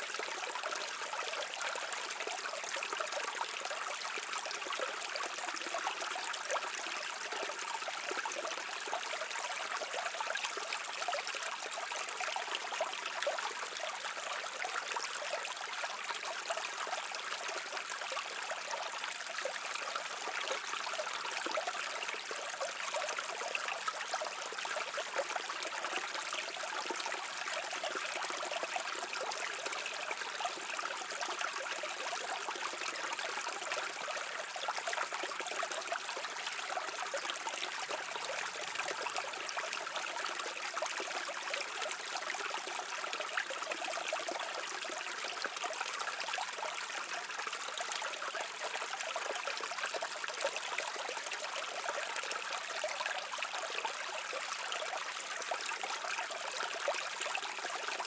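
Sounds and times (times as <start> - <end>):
stream trickling over stones: 0.0 - 58.0.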